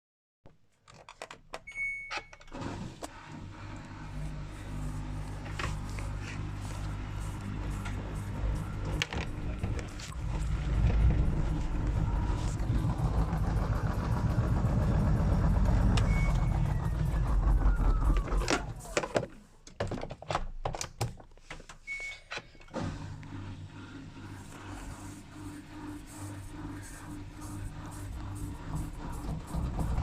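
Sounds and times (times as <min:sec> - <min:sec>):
low vehicle rumble: 0:03.4 - 0:19.0, 0:23.5 - 0:30.0.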